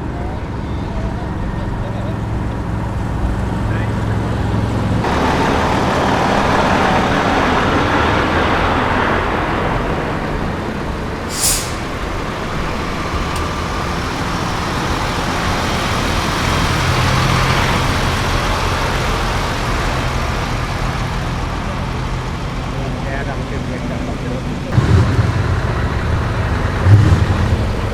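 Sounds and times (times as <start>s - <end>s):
truck diesel engines running: 0.0s - 27.9s
air hissing burst: 11.2s - 13.4s.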